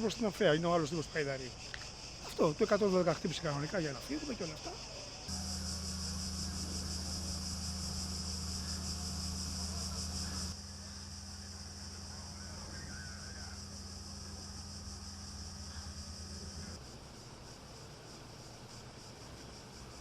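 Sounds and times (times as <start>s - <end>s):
cicadas buzzing: 0.0s - 20.0s
steady low hum: 5.2s - 19.1s.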